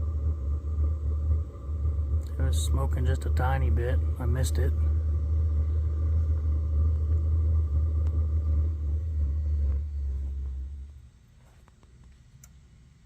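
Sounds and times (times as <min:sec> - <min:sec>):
oil heater rumbling: 0:00.0 - 0:13.0.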